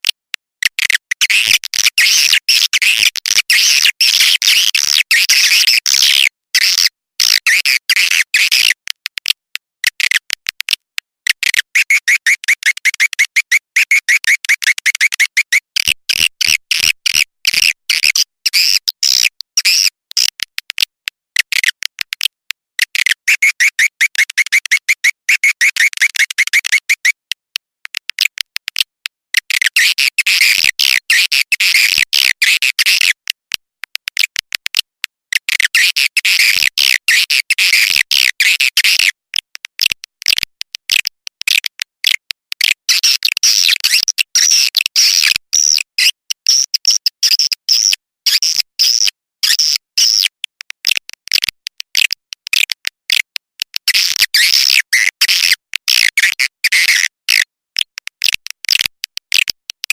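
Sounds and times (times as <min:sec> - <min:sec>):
high chirping clicks and twitters: 0:00.0 - 0:27.3, 0:27.9 - 0:33.4, 0:34.0 - 0:59.9.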